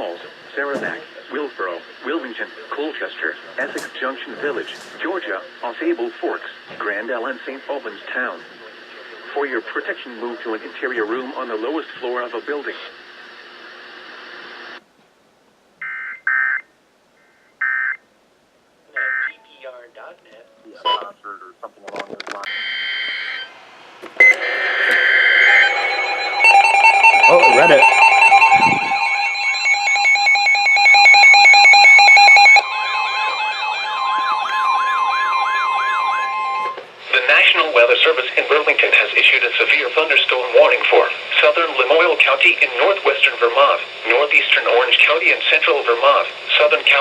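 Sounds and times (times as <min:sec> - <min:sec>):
radio hiss: 0:00.0 - 0:14.8, 0:18.9 - 0:23.5, 0:24.2 - 0:29.2, 0:36.6 - 0:47.0
rapid electronic beeping: 0:24.2 - 0:36.8
screeching two-tone data signal: 0:24.2 - 0:36.8
wailing siren sweep: 0:24.2 - 0:36.8.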